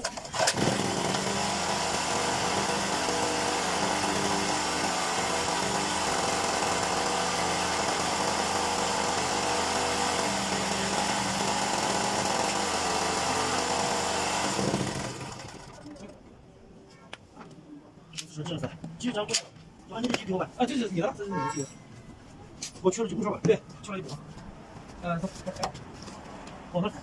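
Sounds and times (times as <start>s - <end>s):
generator engine running: 0.3s - 15.8s.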